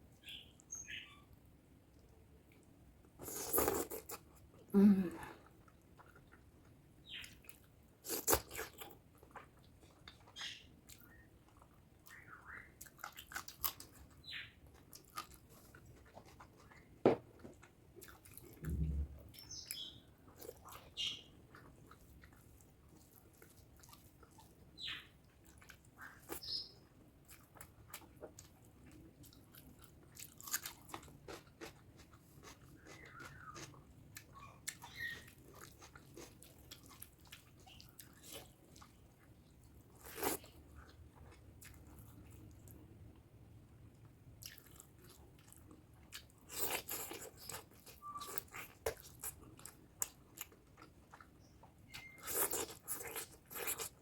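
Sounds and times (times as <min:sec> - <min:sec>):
chewing and wet mouth smacks: 0:05.6 - 0:17.0, 0:27.2 - 0:42.8, 0:44.4 - 0:54.0.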